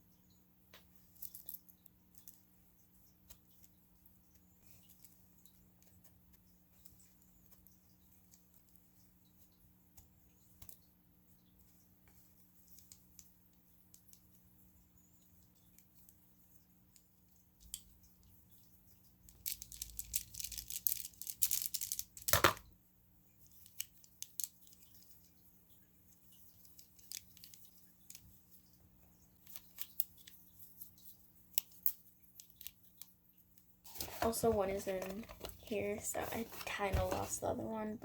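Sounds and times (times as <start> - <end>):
plastic toys clicking: 19.3 - 22.6
packaging rustling and crinkling: 19.4 - 22.6, 33.9 - 37.5.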